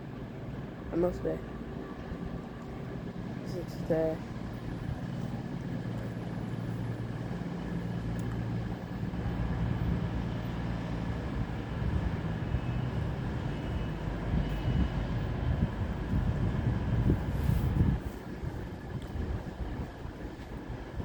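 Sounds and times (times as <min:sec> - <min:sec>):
train diesel engines running: 0:00.0 - 0:21.0.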